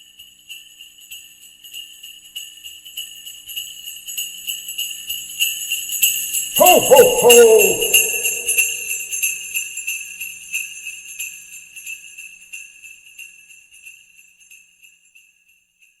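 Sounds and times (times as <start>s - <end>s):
sleigh bells jingling: 6.6s - 9.2s.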